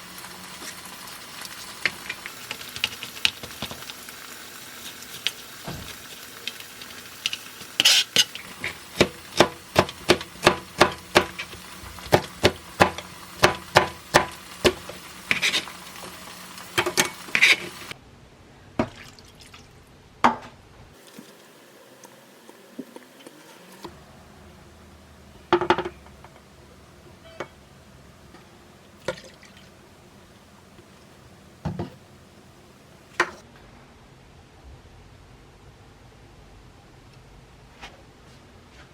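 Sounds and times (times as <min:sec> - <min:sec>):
kitchen utensils knocking: 0:25.6 - 0:26.4.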